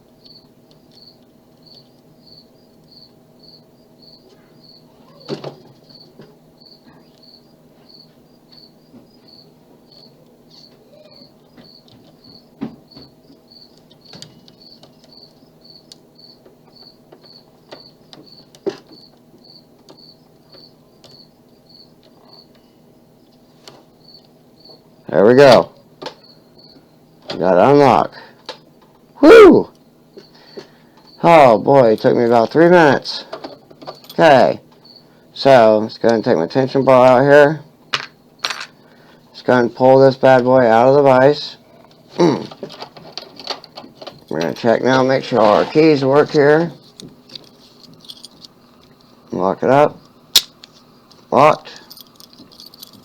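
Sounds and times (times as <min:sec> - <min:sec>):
cricket chirping: 0:00.1 - 0:25.1, 0:26.1 - 0:27.2, 0:29.7 - 0:38.6.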